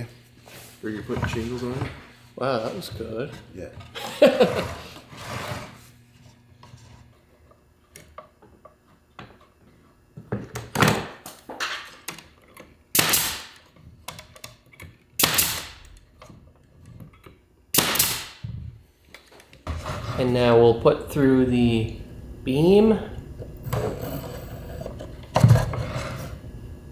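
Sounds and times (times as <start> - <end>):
pneumatic nailer firing: 12.9 - 13.7, 15.2 - 16.0, 17.7 - 18.6.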